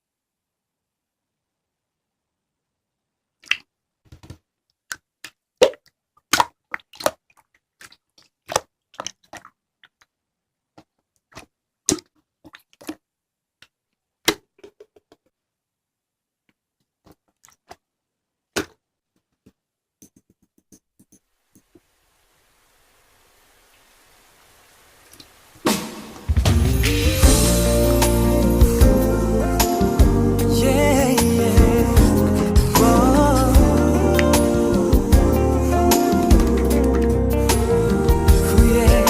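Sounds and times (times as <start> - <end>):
slime clicking and popping: 4.9 - 10.1.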